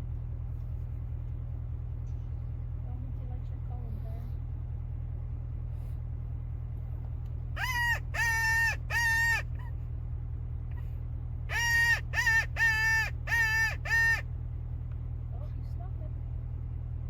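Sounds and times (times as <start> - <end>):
low hum: 0.0 - 17.0
bird cawing: 7.6 - 9.8, 11.5 - 14.2.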